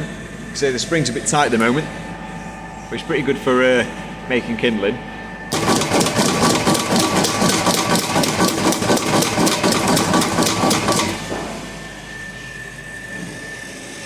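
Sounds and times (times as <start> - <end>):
power hammer striking: 5.5 - 11.8.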